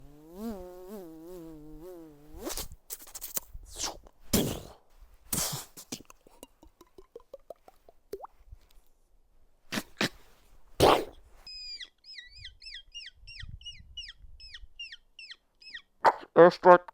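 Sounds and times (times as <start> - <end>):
beatbox clicks and hisses: 2.4 - 6.2
quick mouth pops: 2.4 - 8.4, 9.7 - 10.2, 10.8 - 11.2.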